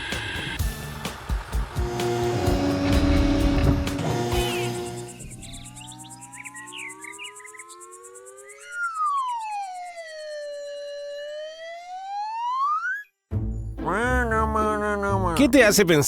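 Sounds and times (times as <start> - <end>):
cartoon siren wailing: 5.4 - 13.1.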